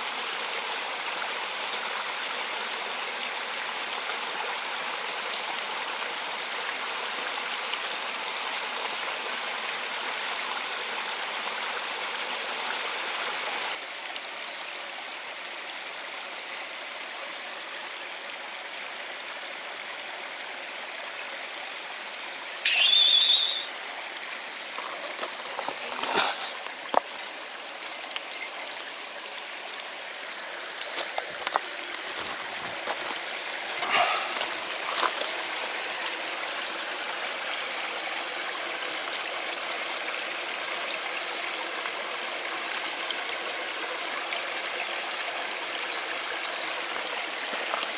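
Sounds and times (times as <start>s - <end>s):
faint high chirps: 22.7s - 23.8s
high whistling tone: 22.7s - 23.8s.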